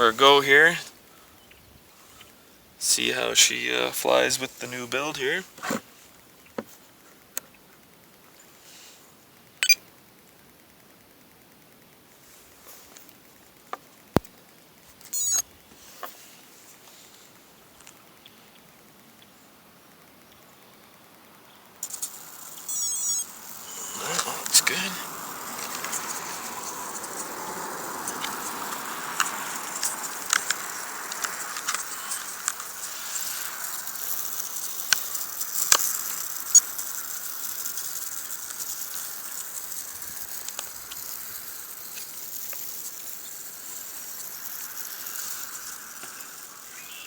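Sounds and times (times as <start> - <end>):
servos buzzing faintly: 21.8 - 47.0.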